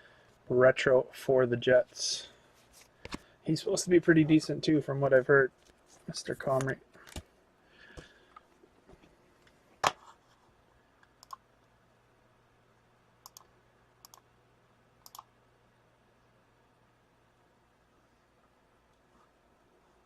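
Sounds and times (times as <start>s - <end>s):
faint low hum: 0.0s - 20.0s.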